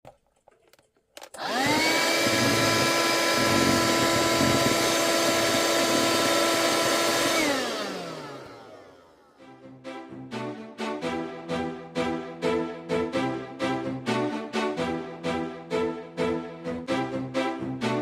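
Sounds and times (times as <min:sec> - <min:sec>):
mini vacuum motor whine: 0:01.4 - 0:09.4.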